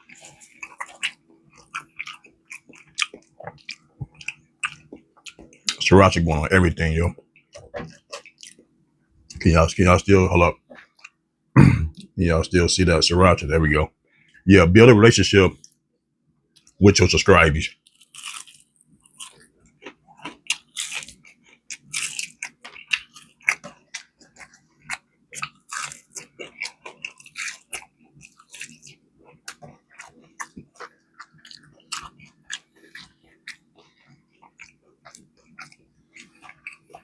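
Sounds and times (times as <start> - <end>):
person chewing crunchy food: 0.0 - 8.8, 10.6 - 11.2, 17.7 - 37.0
faint steady hum: 0.0 - 37.0.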